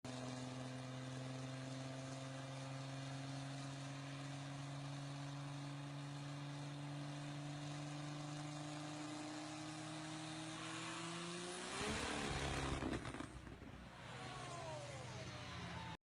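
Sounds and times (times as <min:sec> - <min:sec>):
car engine running: 0:00.2 - 0:16.0.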